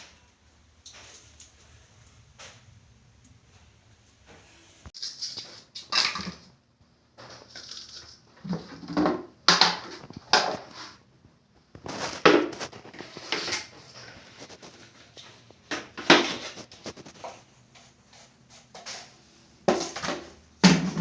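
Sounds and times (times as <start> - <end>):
knocks and scrapes of hard material: 11.8 - 15.0.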